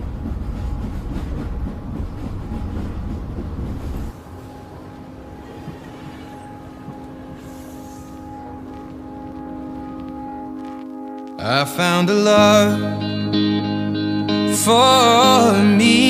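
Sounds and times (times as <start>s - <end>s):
loud low rumbling: 0.0s - 10.6s
background music held tones: 0.0s - 16.0s.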